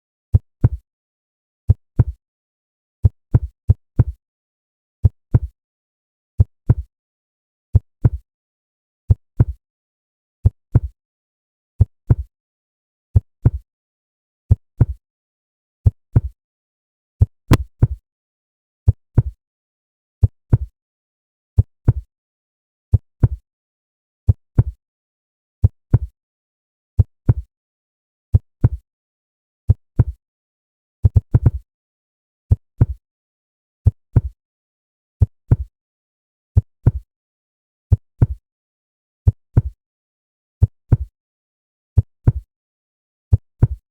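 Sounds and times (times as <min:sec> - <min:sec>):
heartbeat thumps: 0:17.5 - 0:17.7.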